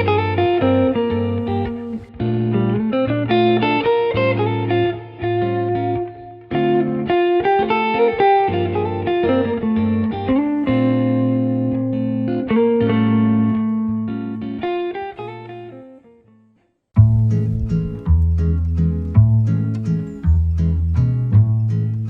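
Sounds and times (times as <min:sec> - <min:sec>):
plucked guitar music: 0:00.0 - 0:22.0.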